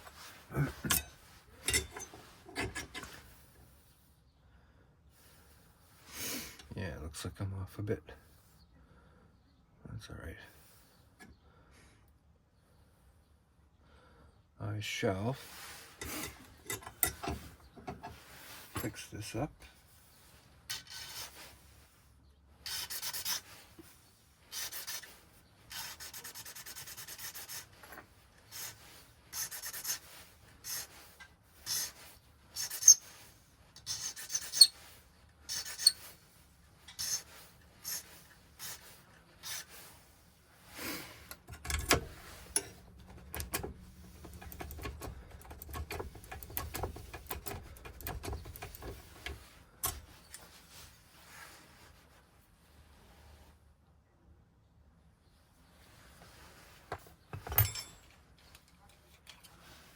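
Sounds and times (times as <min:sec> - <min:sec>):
metal file rasping on key: 0:00.8 - 0:03.2, 0:16.0 - 0:18.2, 0:22.7 - 0:23.5, 0:24.5 - 0:25.1, 0:25.7 - 0:31.0, 0:31.6 - 0:32.0, 0:32.6 - 0:33.1, 0:33.8 - 0:34.9, 0:35.5 - 0:36.1, 0:36.9 - 0:38.8, 0:41.4 - 0:50.1.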